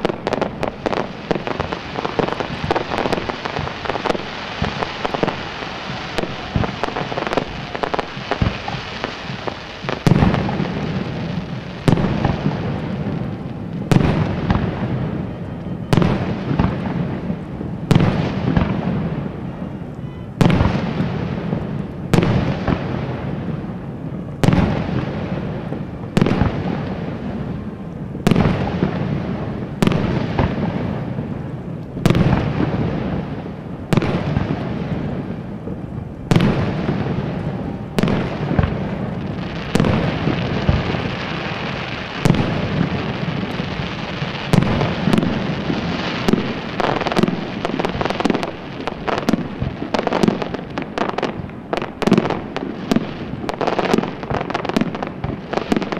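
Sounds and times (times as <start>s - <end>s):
firework shells bursting: 0.0s - 11.0s
firework crackling: 0.0s - 55.9s.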